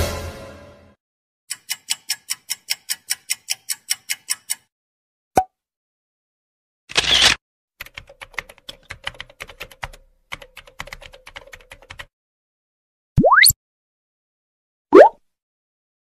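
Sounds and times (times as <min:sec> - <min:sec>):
typing on computer keyboard: 0:07.8 - 0:12.1.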